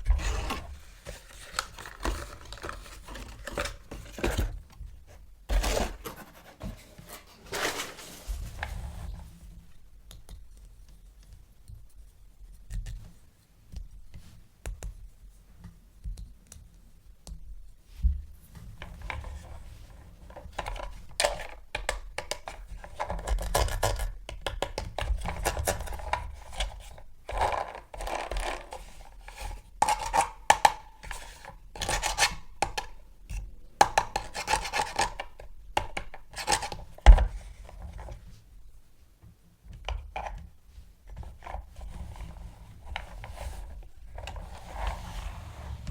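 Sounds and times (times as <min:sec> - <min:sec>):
handling plastic toys and packaging: 0:00.0 - 0:09.0, 0:18.8 - 0:33.0, 0:33.8 - 0:38.2.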